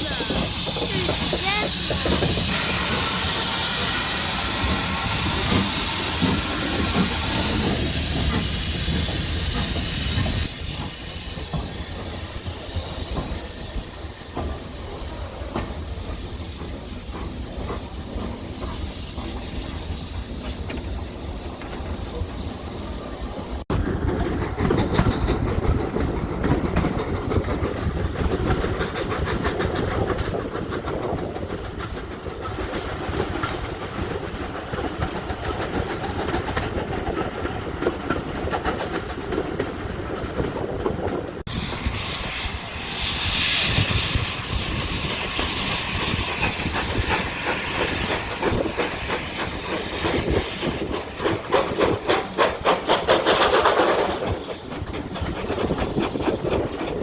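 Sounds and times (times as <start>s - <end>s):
loud steam hiss: 0.0s - 23.6s, 41.4s - 57.0s
train rumbling: 0.0s - 57.0s.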